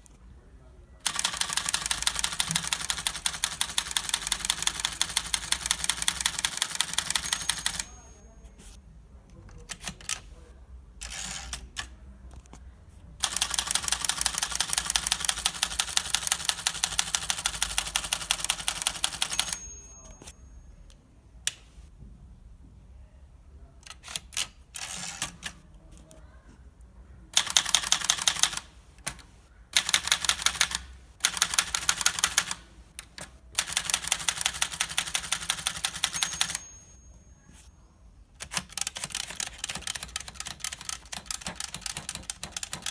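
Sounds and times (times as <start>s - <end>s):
typewriter bell ring: 1.1s - 8.7s, 13.2s - 20.6s, 33.6s - 37.7s
manual typewriter key strikes: 38.4s - 42.9s.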